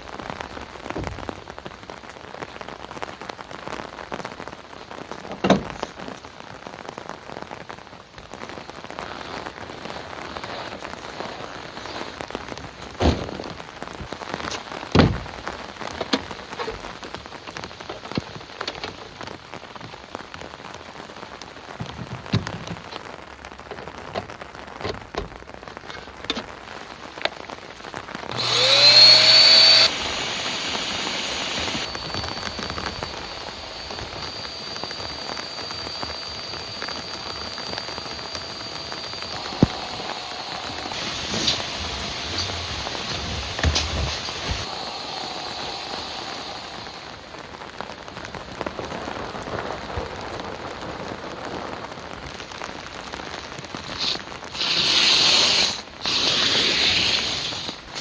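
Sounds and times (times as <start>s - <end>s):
rain pattering: 0.0s - 28.4s, 46.5s - 54.6s
electric air pump whining: 28.3s - 47.3s, 53.8s - 58.0s.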